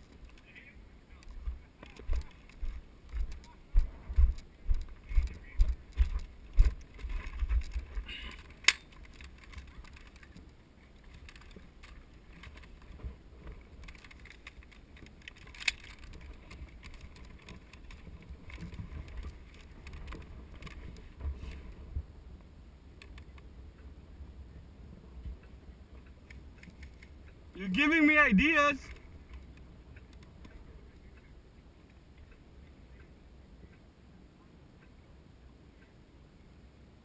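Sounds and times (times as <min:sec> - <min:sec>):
footsteps: 0:01.3 - 0:08.4.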